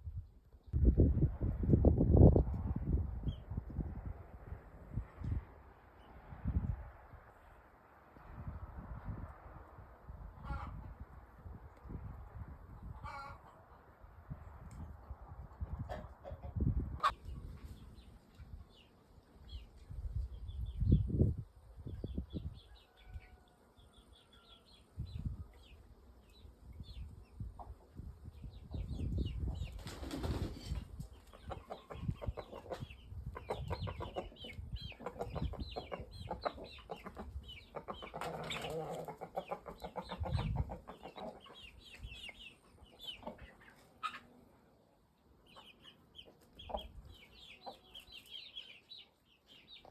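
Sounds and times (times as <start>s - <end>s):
wing flapping: 29.7s - 31.0s.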